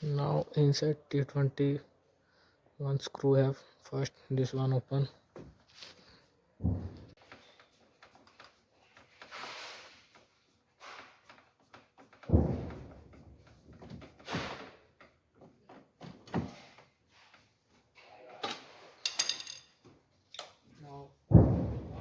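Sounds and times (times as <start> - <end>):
heavy thump against door: 6.6 - 7.1, 12.3 - 13.1, 21.3 - 22.0.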